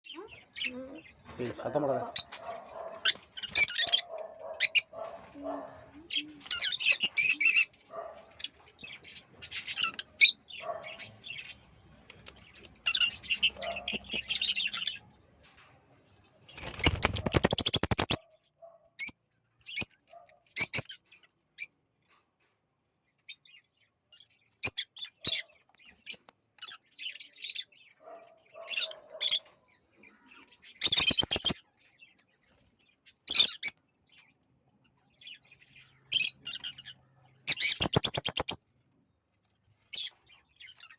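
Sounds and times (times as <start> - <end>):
parakeets chirping and squawking: 0.1 - 15.1, 16.4 - 18.2, 19.0 - 21.7, 23.3 - 34.3, 34.9 - 38.6, 39.8 - 40.9
wings flapping: 16.4 - 18.1.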